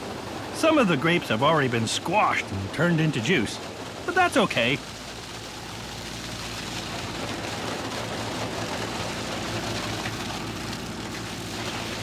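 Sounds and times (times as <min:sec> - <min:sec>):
grapes pouring into bins: 0:07.1 - 0:12.0.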